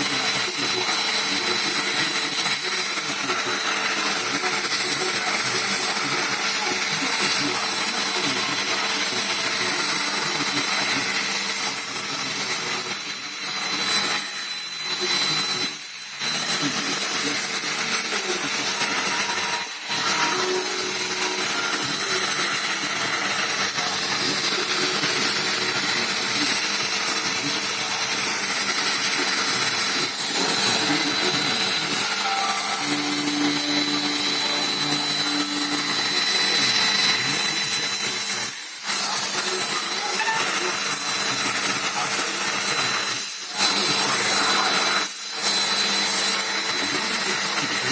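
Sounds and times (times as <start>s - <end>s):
vacuum cleaner running: 0.0s - 47.9s.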